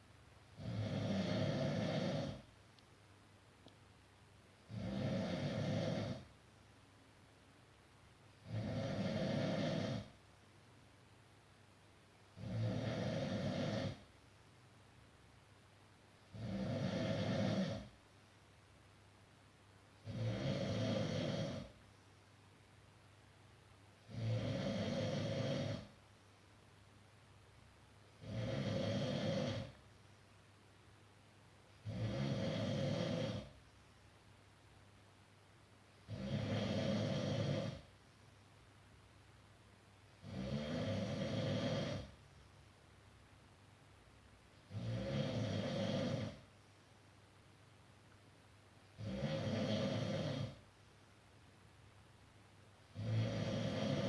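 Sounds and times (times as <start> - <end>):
person snoring: 0.6 - 2.5, 4.7 - 6.3, 8.4 - 10.2, 12.4 - 14.1, 16.3 - 18.0, 20.0 - 21.8, 24.0 - 26.0, 28.2 - 29.8, 31.8 - 33.6, 36.1 - 37.9, 40.2 - 42.2, 44.7 - 46.5, 49.0 - 50.6, 52.9 - 54.0.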